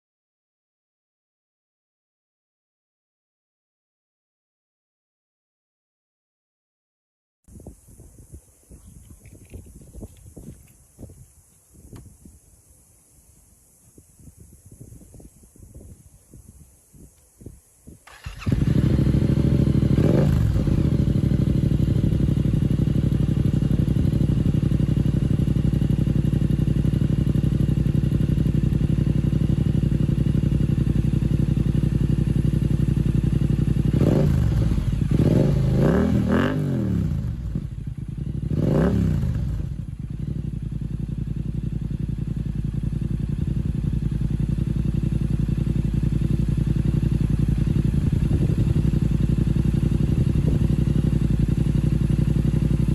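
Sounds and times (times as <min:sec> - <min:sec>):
short throttle revs: 0:18.0 - 0:40.6
motorcycle engine idling: 0:18.1 - 0:52.9.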